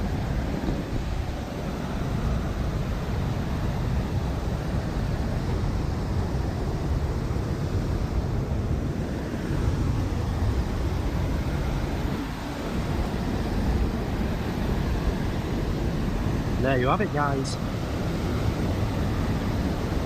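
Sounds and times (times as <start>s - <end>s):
wind rumbling on microphone: 0.0s - 20.0s
waterfall rushing: 8.8s - 20.0s.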